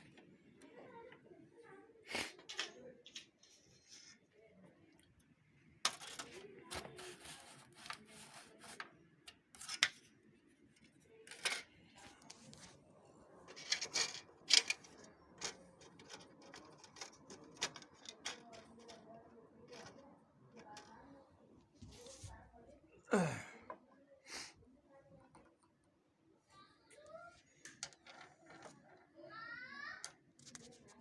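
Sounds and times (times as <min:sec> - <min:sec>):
plastic and metal parts clicking: 0:13.5 - 0:19.1.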